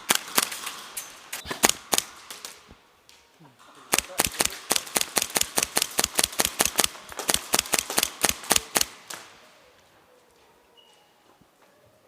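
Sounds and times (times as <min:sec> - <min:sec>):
airsoft gun rapid shots: 0:00.0 - 0:00.8, 0:01.4 - 0:02.6, 0:03.9 - 0:09.3.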